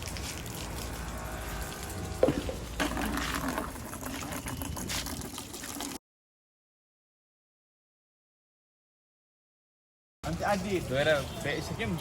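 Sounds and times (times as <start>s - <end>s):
water running and splashing: 0.0s - 6.0s, 10.2s - 12.0s.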